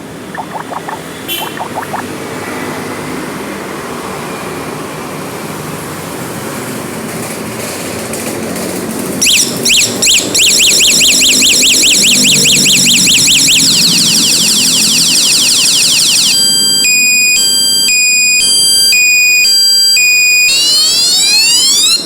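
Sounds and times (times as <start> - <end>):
electronic siren warble: 0.3 - 2.0, 10.1 - 22.0
electronic horn chirps: 0.4 - 2.0.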